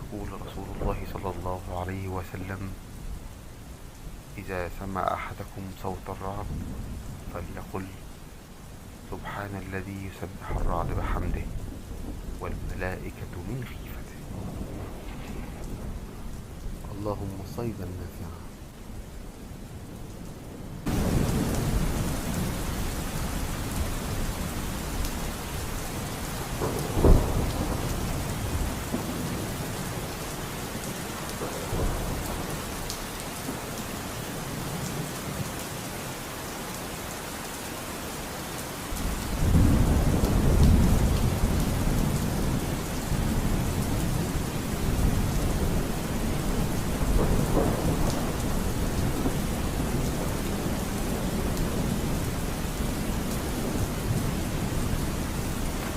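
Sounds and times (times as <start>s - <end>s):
heavy rain: 0.0s - 55.9s
rolling thunder: 6.4s - 7.3s, 10.4s - 16.9s, 20.8s - 30.1s, 30.9s - 32.7s, 39.0s - 55.9s
sharp thunder clap: 14.4s - 16.4s, 26.6s - 29.4s.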